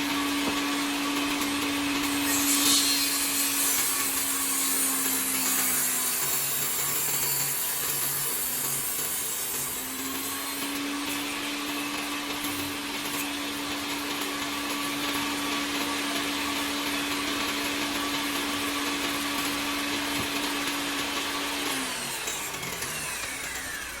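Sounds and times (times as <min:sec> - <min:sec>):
power tool motor running: 0:00.0 - 0:24.0
motor spinning down: 0:18.4 - 0:24.0.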